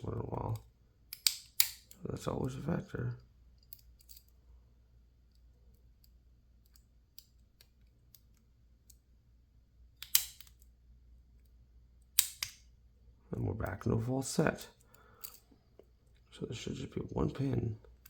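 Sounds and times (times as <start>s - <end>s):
lock pick clicking in lock: 1.1s - 2.0s, 3.6s - 4.3s, 10.0s - 10.7s, 12.2s - 12.6s
sharp lock clicks: 1.1s - 2.0s, 10.0s - 10.6s, 12.2s - 12.6s.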